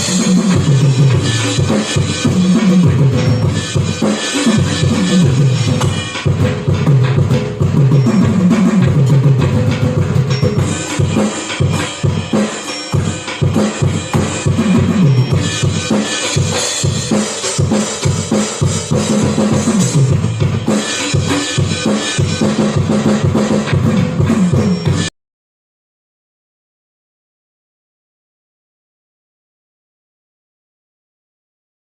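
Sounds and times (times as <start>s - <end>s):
drum kit rolls and fills: 0.0s - 25.1s.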